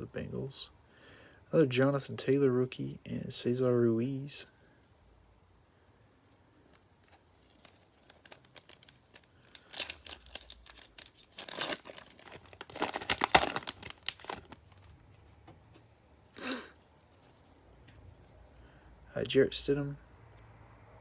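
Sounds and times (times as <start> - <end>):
wrapper being torn and crinkled: 7.0 - 15.0.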